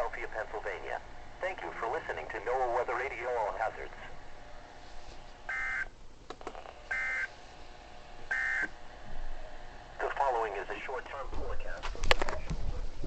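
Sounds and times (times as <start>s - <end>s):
radio speaker hiss: 0.0s - 5.6s, 10.0s - 13.0s.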